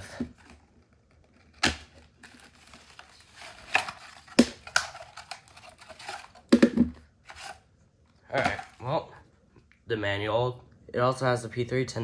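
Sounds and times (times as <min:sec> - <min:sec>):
packaging rustling and crinkling: 0:00.0 - 0:07.6, 0:08.3 - 0:08.8.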